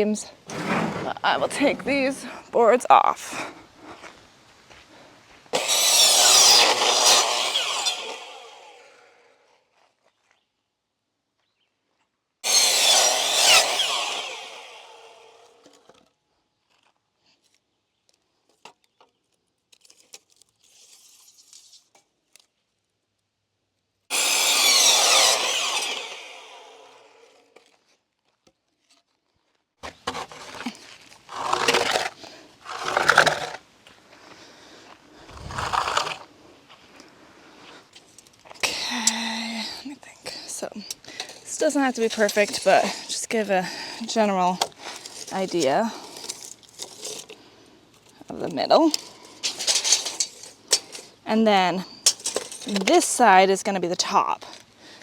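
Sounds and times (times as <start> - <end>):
power saw cutting wood: 5.5 - 9.3, 12.4 - 16.0, 24.1 - 27.7, 30.0 - 33.6, 35.3 - 36.3, 38.6 - 47.4, 48.4 - 53.3.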